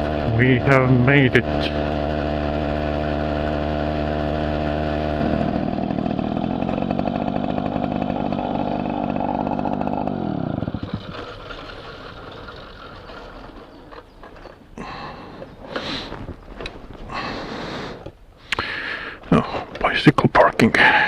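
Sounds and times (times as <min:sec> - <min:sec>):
moped engine idling and revving: 0:00.0 - 0:18.0.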